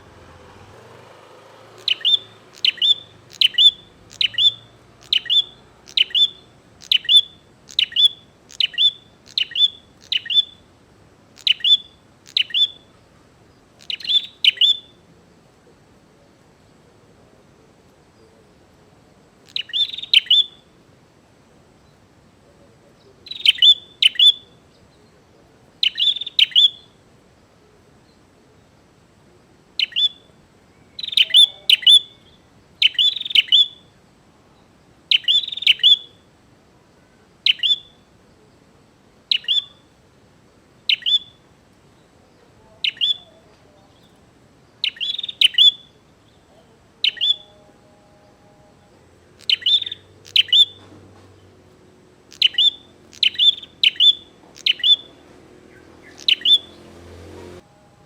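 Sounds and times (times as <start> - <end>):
bird chirping in bursts: 0.0 - 15.1, 19.4 - 20.8, 23.0 - 27.0, 29.7 - 36.3, 37.3 - 40.0, 40.8 - 47.6, 48.8 - 57.6.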